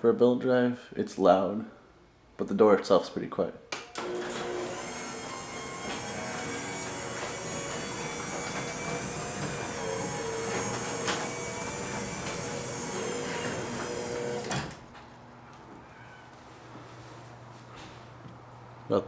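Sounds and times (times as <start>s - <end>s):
garage door opener motor hum: 3.8s - 16.3s
garage door clicks and rattles: 4.0s - 15.1s.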